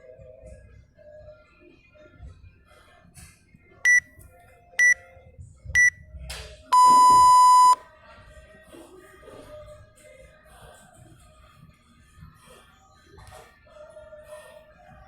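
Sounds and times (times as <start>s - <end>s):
long lower timer beep: 6.8s - 7.8s
short high timer beeps: 6.8s - 7.8s.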